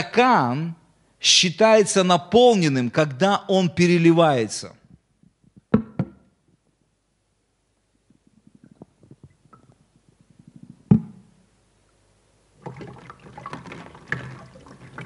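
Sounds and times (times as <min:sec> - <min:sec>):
water pouring into a glass: 0:12.6 - 0:15.0
water splashing over: 0:12.6 - 0:15.0.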